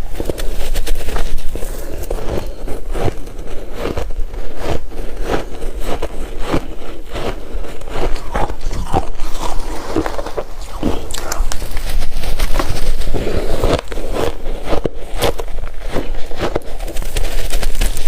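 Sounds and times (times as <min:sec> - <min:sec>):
ice being chewed: 0:00.0 - 0:18.0.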